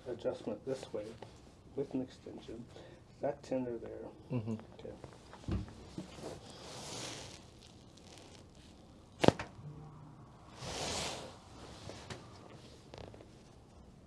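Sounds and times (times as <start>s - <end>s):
neck joint cracking: 5.0s - 9.6s, 12.1s - 13.3s
soft whooshing noise: 6.0s - 13.5s.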